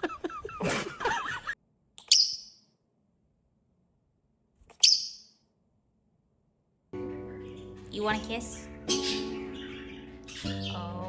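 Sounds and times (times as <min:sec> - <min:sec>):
parrot squawking: 0:04.8 - 0:05.2, 0:08.6 - 0:10.9.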